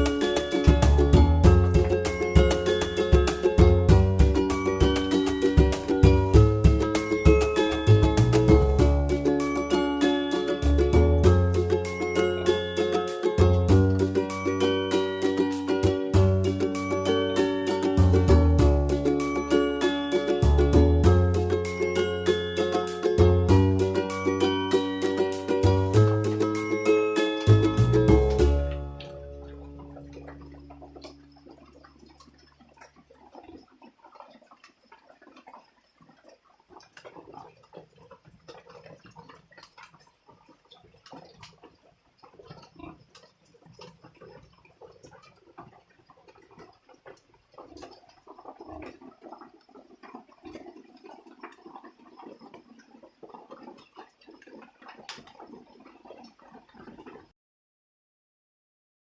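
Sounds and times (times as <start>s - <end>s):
background music: 0.0s - 31.4s.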